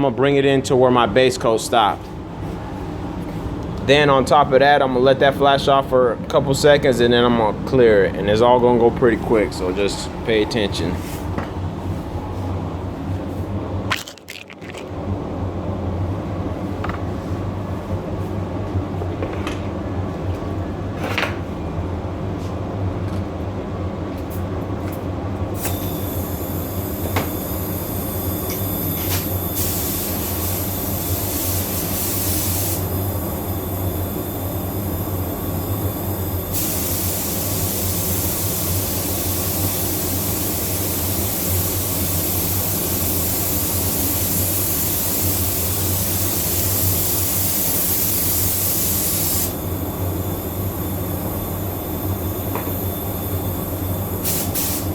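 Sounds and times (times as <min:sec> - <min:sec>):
steady low hum: 0:00.0 - 0:54.9
paint spray gun hissing: 0:25.6 - 0:33.2, 0:36.5 - 0:49.6, 0:54.2 - 0:54.9.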